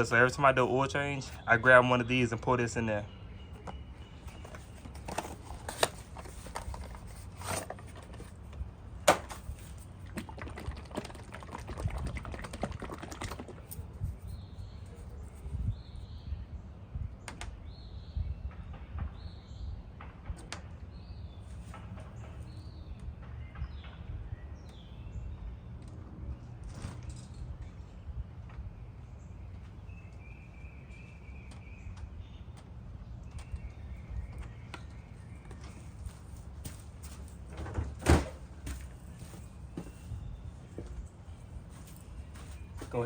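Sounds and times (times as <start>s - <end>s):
birds chirping: 0.0s - 43.0s
bottle and funnel clicks and rattles: 9.1s - 13.9s.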